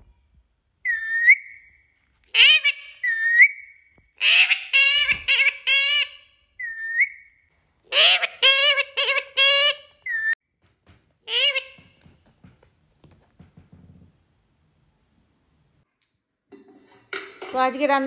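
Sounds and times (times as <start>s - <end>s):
parrot squawking: 0.8s - 1.7s, 2.3s - 10.4s, 11.3s - 12.0s
parrot whistling: 0.8s - 10.4s.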